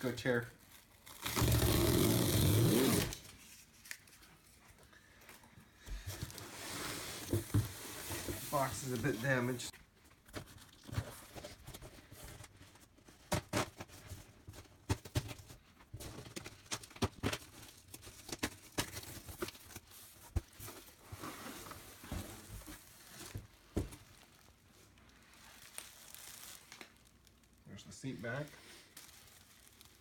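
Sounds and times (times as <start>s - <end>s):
cardboard rustling and tearing: 0.8s - 4.0s.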